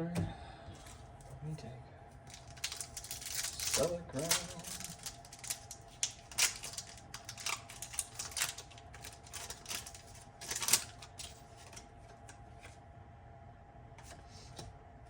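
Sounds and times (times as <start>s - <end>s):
card pack crinkling: 2.2s - 12.3s
cards handled: 2.3s - 12.7s.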